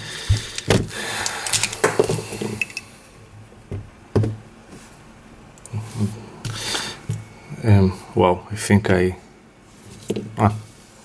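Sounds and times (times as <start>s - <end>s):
plastic puzzle cube rustling: 0.0s - 2.8s.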